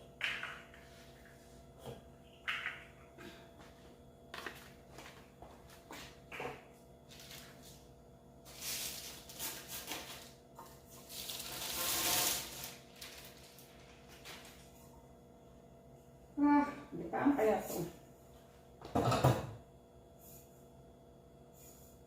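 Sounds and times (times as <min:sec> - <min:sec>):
packing material rustling: 0:08.5 - 0:10.3, 0:11.0 - 0:14.6.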